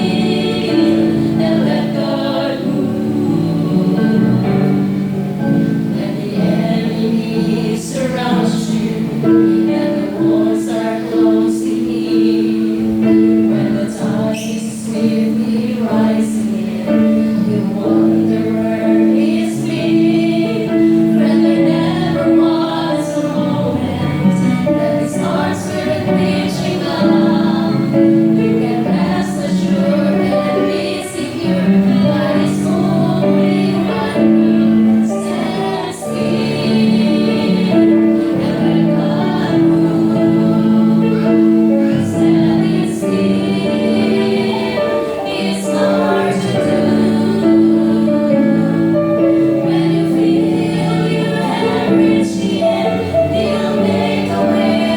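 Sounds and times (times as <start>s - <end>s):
group singing gospel in harmony: 0.0s - 54.9s.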